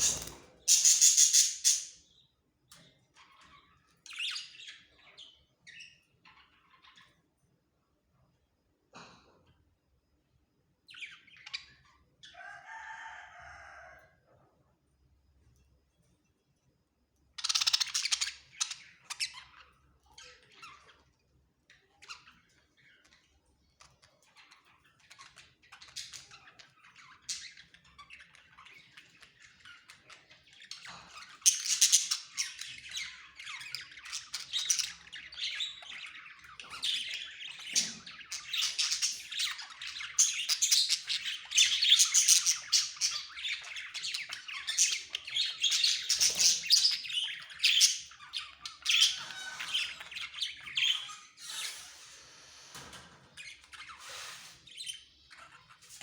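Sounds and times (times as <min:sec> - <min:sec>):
budgerigars chattering and squawking: 0:00.0 - 0:02.1, 0:17.4 - 0:21.1, 0:24.3 - 0:56.0.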